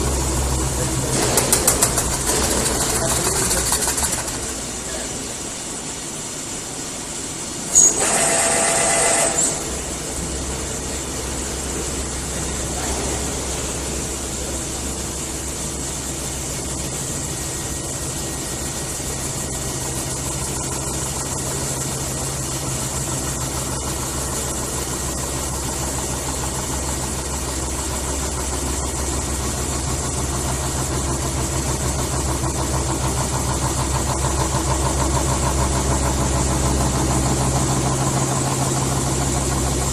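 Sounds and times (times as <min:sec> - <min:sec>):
machine low hum: 0:00.0 - 0:39.9
machine squealing: 0:07.7 - 0:09.7.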